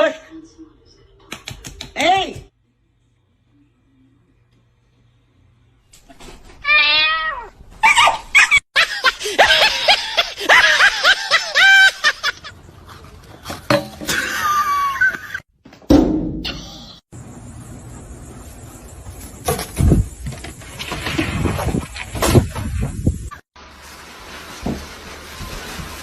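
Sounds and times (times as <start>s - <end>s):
cat meowing and yowling: 6.6s - 8.2s.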